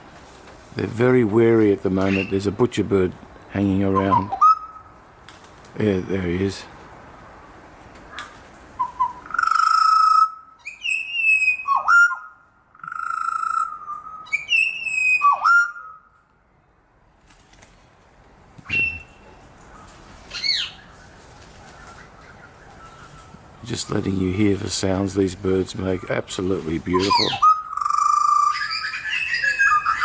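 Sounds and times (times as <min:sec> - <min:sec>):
bird fluting whistled song: 0:03.9 - 0:04.9, 0:08.8 - 0:16.2, 0:18.6 - 0:19.3, 0:27.0 - 0:30.0.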